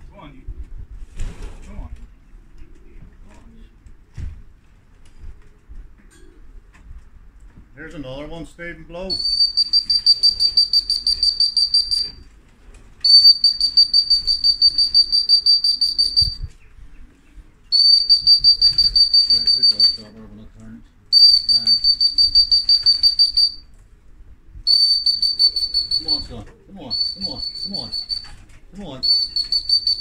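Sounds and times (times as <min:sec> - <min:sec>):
trilling whistle blasts: 0:09.1 - 0:12.2, 0:13.0 - 0:16.5, 0:17.7 - 0:20.0, 0:21.1 - 0:23.6, 0:24.7 - 0:28.4, 0:29.0 - 0:30.0.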